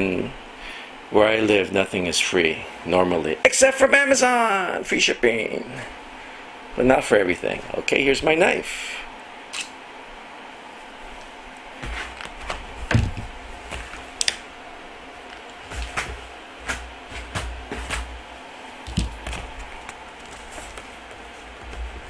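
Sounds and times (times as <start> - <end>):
clicks scrapes and knocks: 15.3 - 18.2
box rumbling as moved: 18.9 - 22.0.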